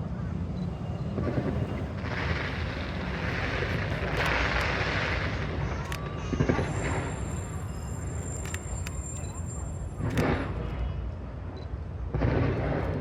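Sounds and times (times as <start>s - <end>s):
fireworks bursting: 1.0s - 10.7s, 12.1s - 13.0s
fireworks hissing crackle: 1.1s - 10.5s.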